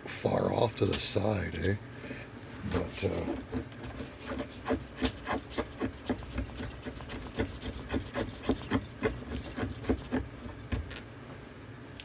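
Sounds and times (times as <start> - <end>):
tool cutting into wood: 3.5 - 10.9.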